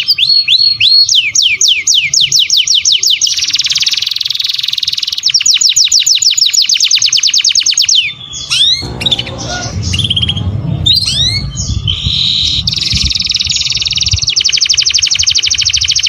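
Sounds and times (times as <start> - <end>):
songbird chirps and trill: 0.0 - 16.0
low rumble: 8.4 - 14.2.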